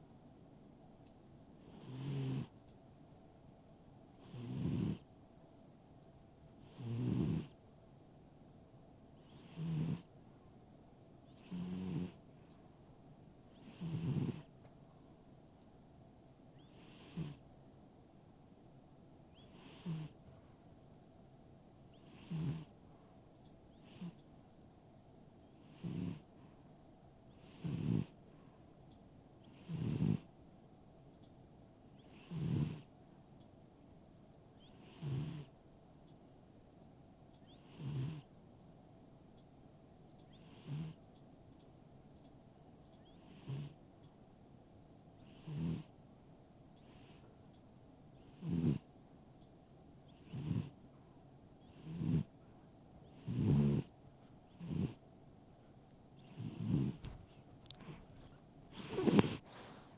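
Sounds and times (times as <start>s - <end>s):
pet snoring: 1.6s - 2.5s, 4.2s - 5.0s, 6.7s - 7.6s, 9.2s - 10.1s, 11.3s - 12.2s, 13.5s - 14.5s, 16.6s - 17.4s, 19.4s - 20.2s, 21.9s - 22.7s, 23.7s - 24.2s, 25.6s - 26.3s, 27.3s - 28.2s, 29.4s - 30.3s, 32.0s - 32.9s, 34.6s - 35.6s, 37.5s - 38.3s, 40.3s - 41.0s, 43.1s - 43.8s, 45.2s - 45.9s, 46.8s - 47.3s, 48.2s - 48.9s, 50.1s - 50.8s, 51.6s - 52.3s, 53.0s - 53.9s, 54.5s - 55.0s, 56.2s - 59.9s.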